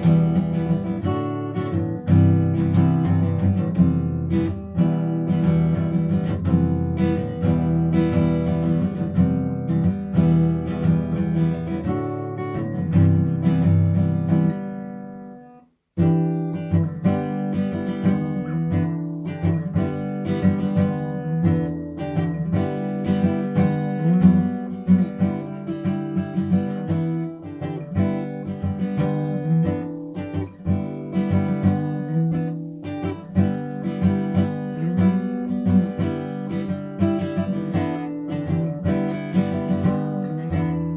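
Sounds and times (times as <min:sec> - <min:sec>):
acoustic guitar strummed and plucked: 0:00.0 - 0:40.9.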